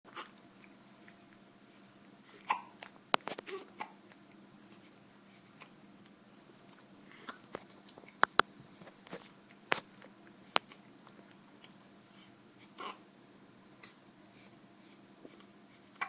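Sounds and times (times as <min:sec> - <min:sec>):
baby hiccuping: 0:02.4 - 0:02.8, 0:03.4 - 0:04.0, 0:12.8 - 0:13.0.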